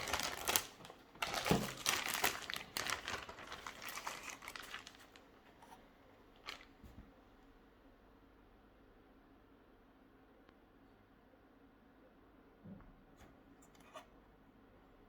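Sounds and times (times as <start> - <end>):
packaging crinkling: 0.0 - 5.8, 6.4 - 7.0.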